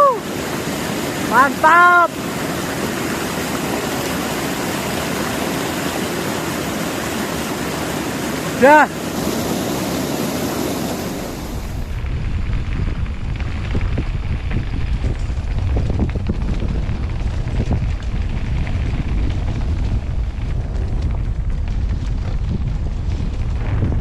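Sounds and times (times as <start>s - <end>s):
wind buffeting microphone: 0.0s - 24.0s
bright hiss: 8.5s - 12.0s.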